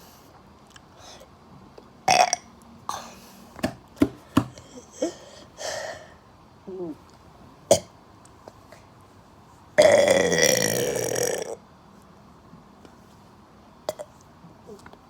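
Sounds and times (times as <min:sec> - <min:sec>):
person burping: 0:02.1 - 0:03.0, 0:09.8 - 0:11.6.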